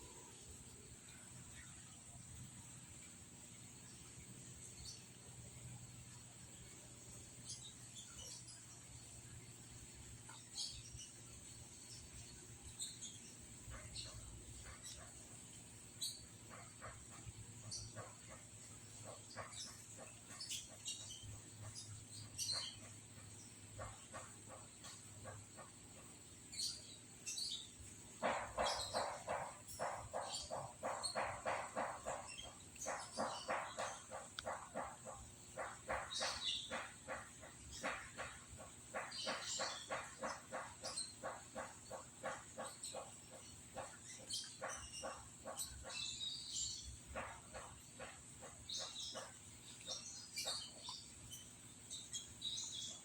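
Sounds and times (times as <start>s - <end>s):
crickets droning: 0.0s - 53.0s
bird chirps: 10.3s - 25.8s, 26.5s - 53.0s.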